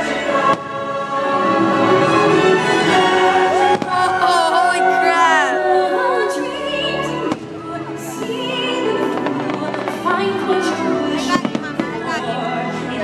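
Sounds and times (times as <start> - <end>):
orchestral music with choir: 0.0 - 13.0
firework bangs: 3.6 - 4.4.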